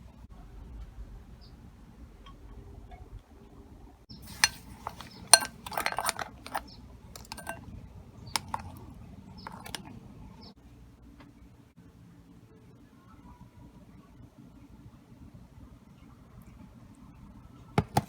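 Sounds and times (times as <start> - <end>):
utensil clinking against bowl: 4.2 - 7.6, 8.3 - 10.0.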